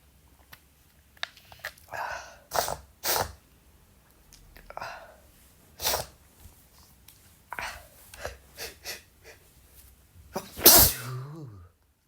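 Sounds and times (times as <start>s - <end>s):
man gasping before sneezing: 10.6s - 11.6s.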